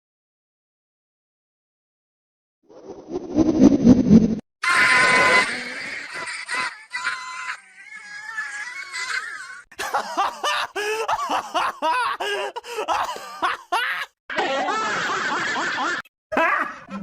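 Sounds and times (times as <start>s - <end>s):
cartoon character laughing: 4.6s - 17.0s.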